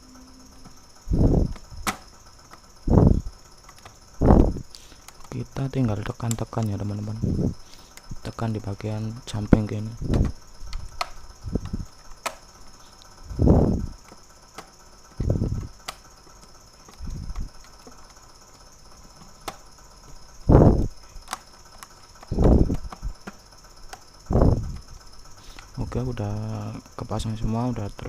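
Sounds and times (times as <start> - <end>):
plastic clips snapping: 1.4 - 2.7, 3.6 - 5.4, 9.5 - 13.1, 14.0 - 19.7, 21.2 - 24.1.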